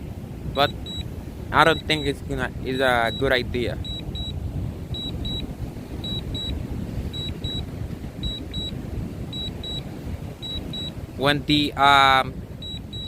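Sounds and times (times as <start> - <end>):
wind rumble on microphone: 0.0 - 13.0
remote controller double beep: 0.6 - 1.0, 3.0 - 5.4, 6.0 - 11.0, 12.6 - 13.0.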